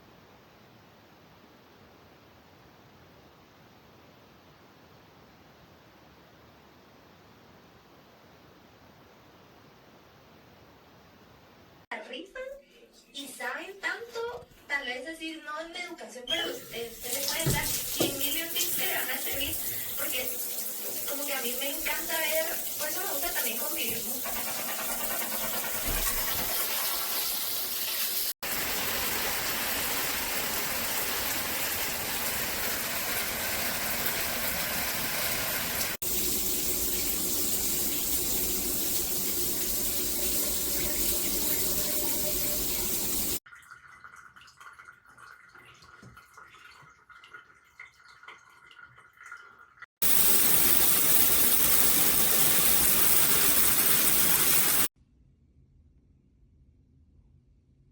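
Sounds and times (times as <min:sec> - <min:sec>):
water spraying from shower head: 0:16.4 - 0:43.4, 0:50.0 - 0:54.9.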